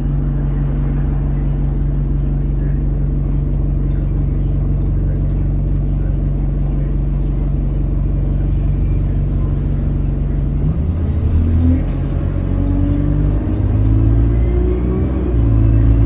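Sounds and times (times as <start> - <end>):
bus diesel engine running: 0.0 - 16.0
turbocharger whistle: 11.2 - 16.0.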